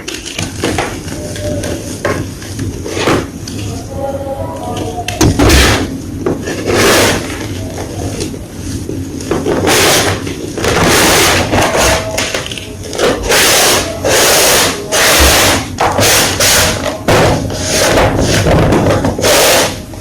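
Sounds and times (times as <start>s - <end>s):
chalk blocks crunching: 5.6s - 19.8s.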